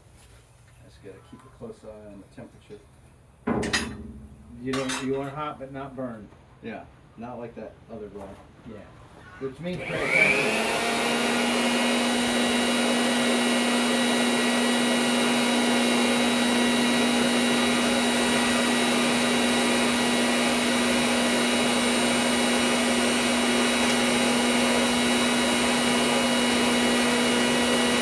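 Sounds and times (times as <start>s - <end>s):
constant hum: 0.1s - 9.5s.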